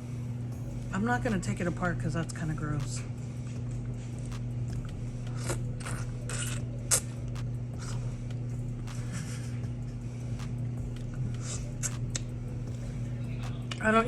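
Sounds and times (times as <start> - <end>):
steady low hum: 0.0 - 14.0
chewing and biting: 3.8 - 9.3, 10.4 - 12.4.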